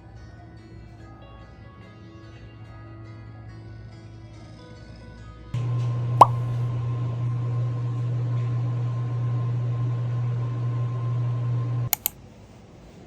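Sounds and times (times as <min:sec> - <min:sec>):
microwave oven humming: 0:05.6 - 0:12.1
microwave clicks: 0:11.9 - 0:12.1.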